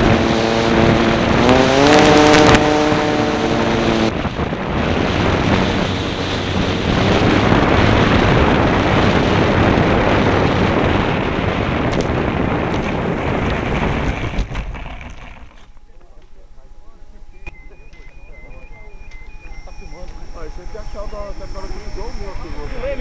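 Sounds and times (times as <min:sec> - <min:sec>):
air rushing over microphone: 0:00.0 - 0:15.6
model airplane motor and propeller: 0:00.0 - 0:15.8.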